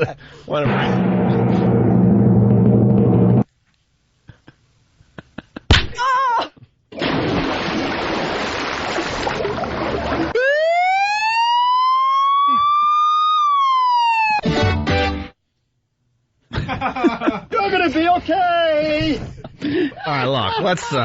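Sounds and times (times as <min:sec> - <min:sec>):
loud rushing noise: 0:00.6 - 0:03.4
rising siren-like tone: 0:00.7 - 0:03.4
warbling tone: 0:00.7 - 0:03.4.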